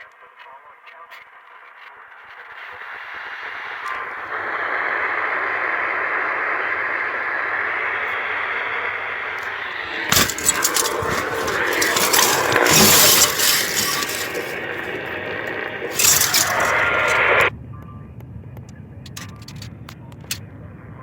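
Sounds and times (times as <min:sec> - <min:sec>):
radio static hiss: 0:02.5 - 0:12.7, 0:13.9 - 0:17.5
radio crackling: 0:03.6 - 0:17.5.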